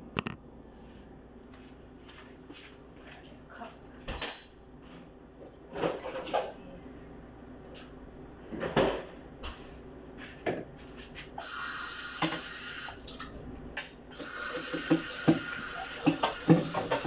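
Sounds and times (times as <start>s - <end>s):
tap running into sink: 14.2s - 17.0s
cups and lids clattering: 14.3s - 17.0s.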